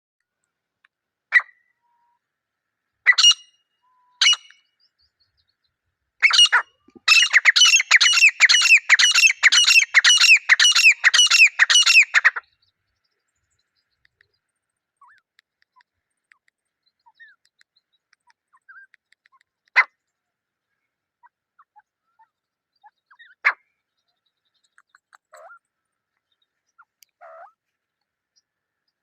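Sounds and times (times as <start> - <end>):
francolin calling: 6.2 - 12.4.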